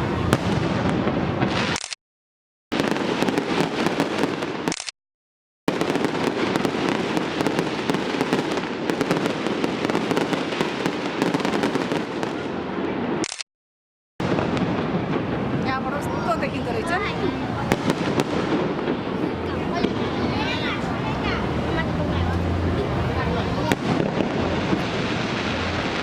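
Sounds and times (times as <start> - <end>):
fireworks bursting and crackling: 0.0 - 1.9, 2.7 - 4.9, 5.7 - 13.4, 14.2 - 26.0.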